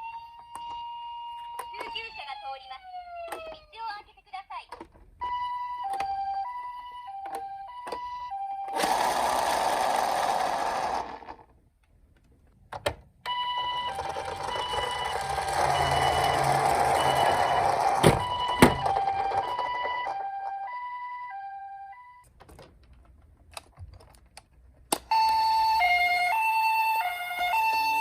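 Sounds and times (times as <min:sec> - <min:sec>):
toy electronic hi-lo siren: 0:00.0 - 0:03.8, 0:05.2 - 0:11.1, 0:13.3 - 0:22.2, 0:25.1 - 0:28.0
loud rough whirring: 0:08.8 - 0:11.4, 0:14.3 - 0:18.2.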